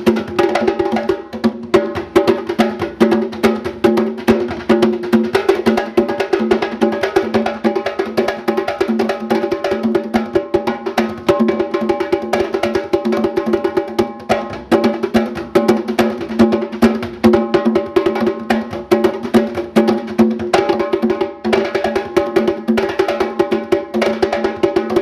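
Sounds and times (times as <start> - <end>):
fast percussion music: 0.0 - 25.0.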